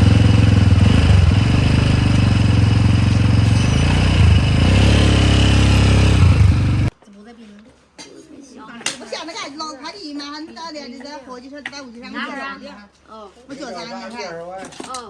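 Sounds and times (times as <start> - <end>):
small motorcycle engine running: 0.0 - 6.9.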